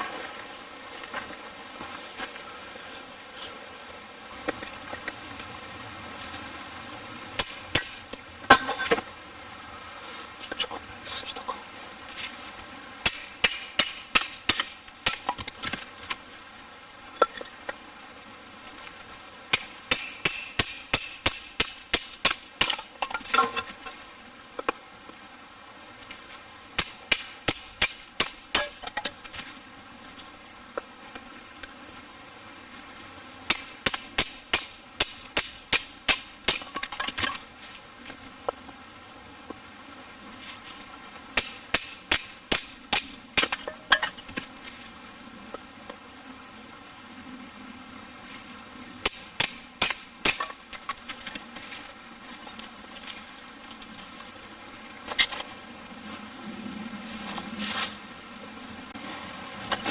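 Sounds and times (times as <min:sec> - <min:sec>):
hammer striking metal tent stake: 0:07.4 - 0:09.0, 0:13.0 - 0:15.4, 0:19.5 - 0:23.6, 0:26.8 - 0:29.0, 0:33.5 - 0:37.3, 0:41.4 - 0:44.1, 0:49.1 - 0:50.6.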